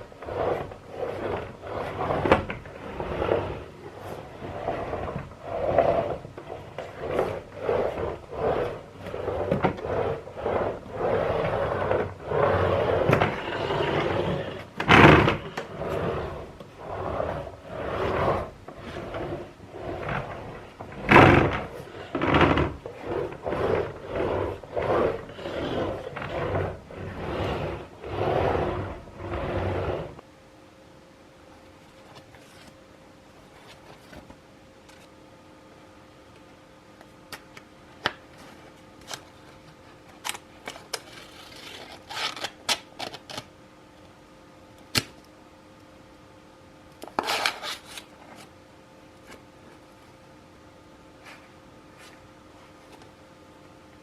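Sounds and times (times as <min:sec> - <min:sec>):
objects scraping and knocking: 0:00.2 - 0:30.2.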